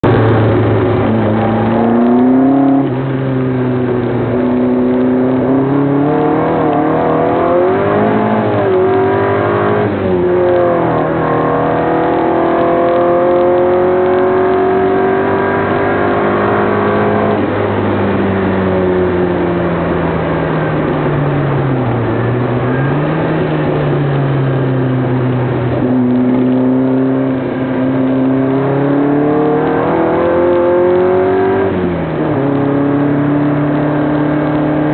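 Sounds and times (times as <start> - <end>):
car engine revving: 0.0 - 34.9.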